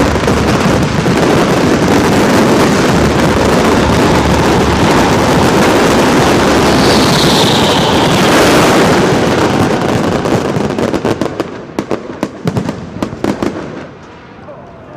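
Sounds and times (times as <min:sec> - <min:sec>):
fireworks bursts and crackle: 0:00.0 - 0:14.9
firework whistle: 0:00.7 - 0:11.2.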